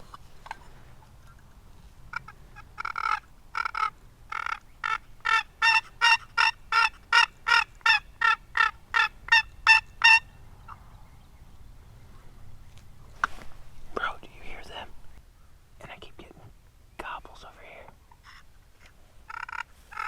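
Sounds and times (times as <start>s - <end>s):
turkey yelps: 2.1s - 10.8s, 19.3s - 20.0s.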